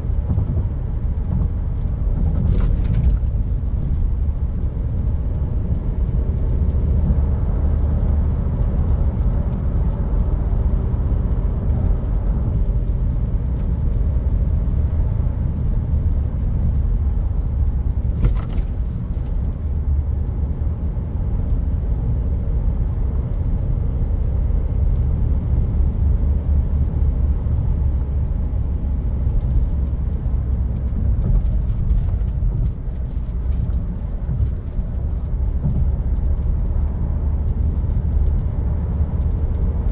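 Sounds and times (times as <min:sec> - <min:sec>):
car engine low rumble: 0:00.0 - 0:39.9.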